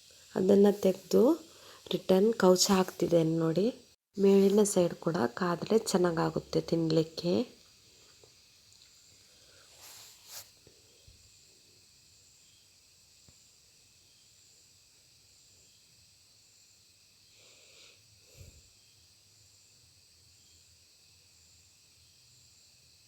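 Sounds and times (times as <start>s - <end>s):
faint rustles: 8.8s - 10.7s.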